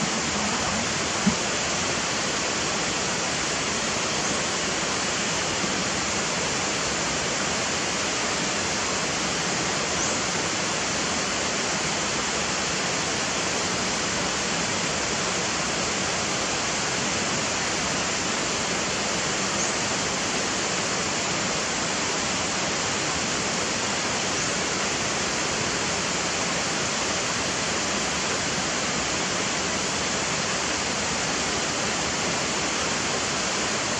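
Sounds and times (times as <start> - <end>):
steady rushing noise: 0.0 - 3.6.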